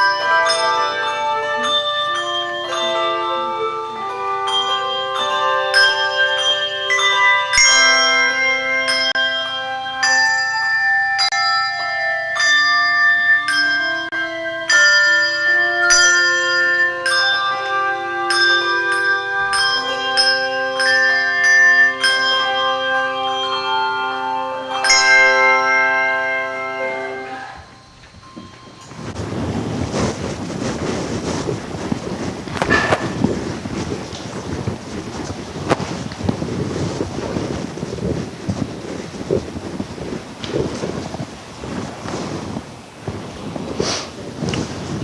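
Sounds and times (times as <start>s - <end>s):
handbell choir playing: 0.0s - 42.6s.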